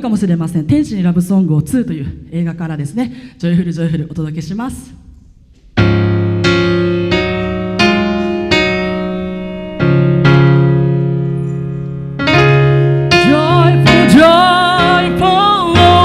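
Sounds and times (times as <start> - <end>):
electric piano chords: 5.6 - 16.0.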